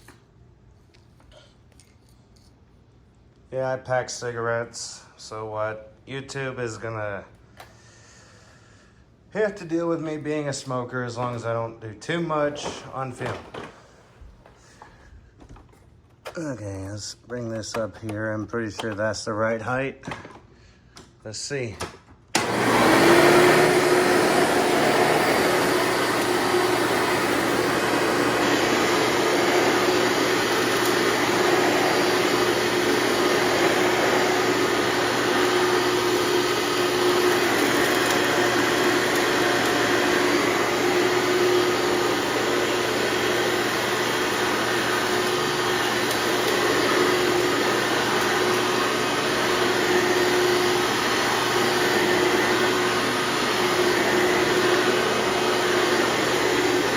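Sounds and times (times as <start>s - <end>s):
upright vacuum cleaner running: 9.9s - 15.6s, 22.3s - 56.9s.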